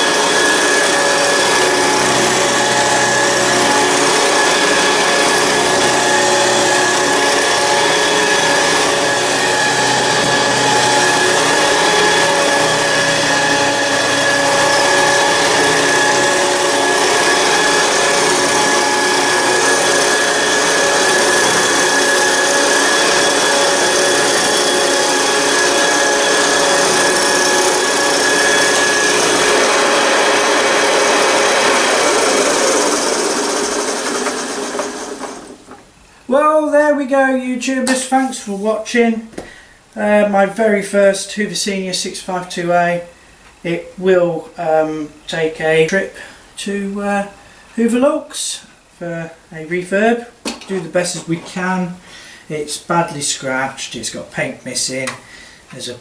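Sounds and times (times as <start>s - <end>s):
vacuum cleaner motor whine: 0.0s - 35.8s.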